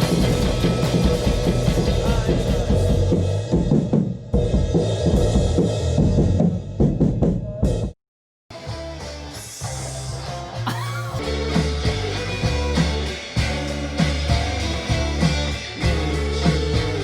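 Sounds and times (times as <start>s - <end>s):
rock band playing: 0.0s - 3.1s, 8.5s - 17.0s.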